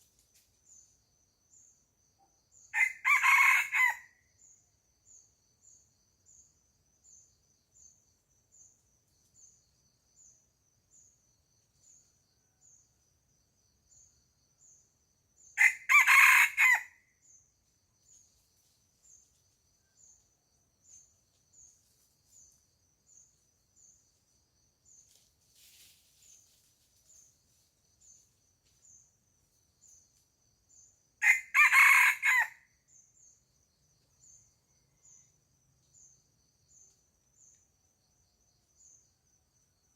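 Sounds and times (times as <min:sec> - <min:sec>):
high insect-like chirp: 0:00.0 - 0:39.9
rooster crowing: 0:02.7 - 0:04.1, 0:15.6 - 0:17.0, 0:31.2 - 0:32.6.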